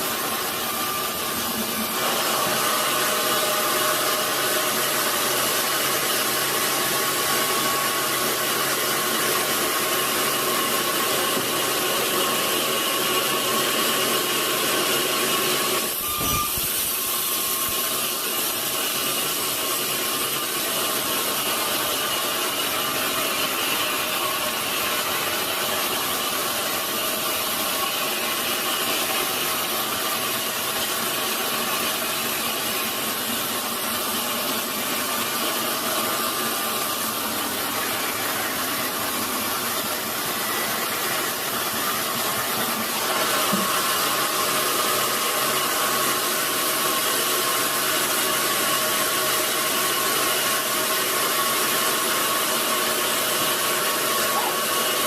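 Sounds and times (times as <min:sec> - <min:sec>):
sawmill saw whining through log: 0:00.0 - 0:55.0.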